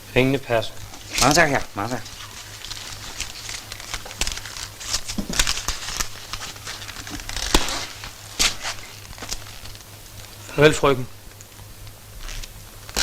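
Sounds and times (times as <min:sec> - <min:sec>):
film soundtrack hum and crackle: 0:00.0 - 0:13.0
rustles and small knocks: 0:00.7 - 0:10.6.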